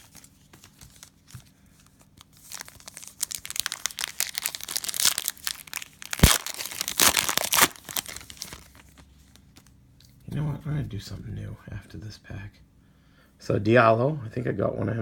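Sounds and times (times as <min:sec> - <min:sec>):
cellophane wrapper crinkling and tearing: 0:00.0 - 0:09.7.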